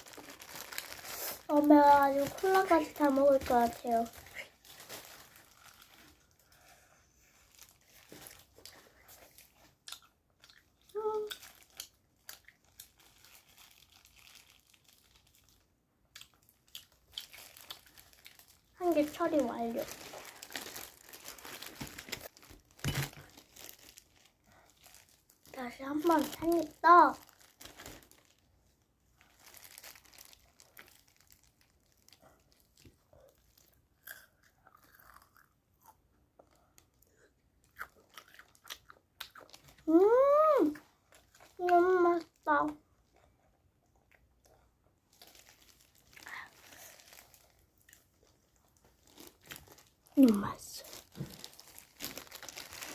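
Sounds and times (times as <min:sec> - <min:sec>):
chewing crispy chicken: 0:07.4 - 0:19.3, 0:29.2 - 0:52.9
crunchy biting and chewing: 0:34.0 - 0:36.0.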